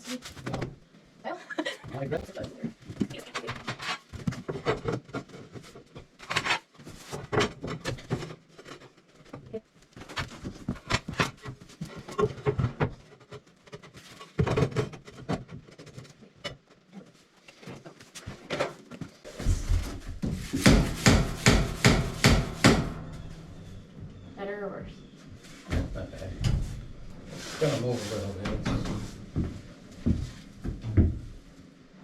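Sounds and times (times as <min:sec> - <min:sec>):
tiles and boards knocking: 0:20.5 - 0:23.2.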